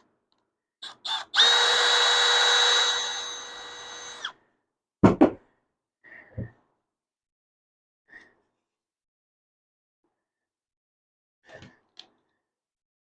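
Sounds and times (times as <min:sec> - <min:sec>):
cordless drill whining: 0:00.8 - 0:04.3.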